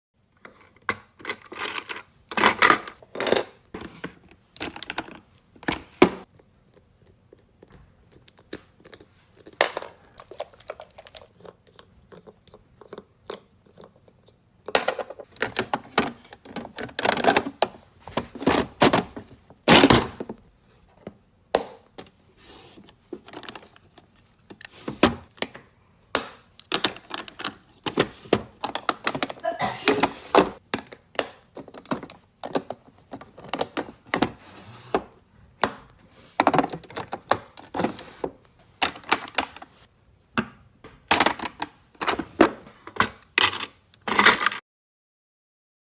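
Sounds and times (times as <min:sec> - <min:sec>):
packaging clicks and taps: 0:25.3 - 0:34.3.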